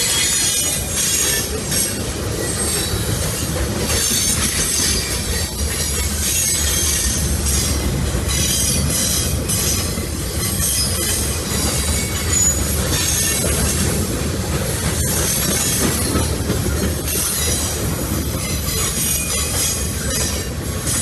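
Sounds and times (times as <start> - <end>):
wheel squeal: 0.0 - 13.9
freight train wheels rumbling: 0.0 - 21.0.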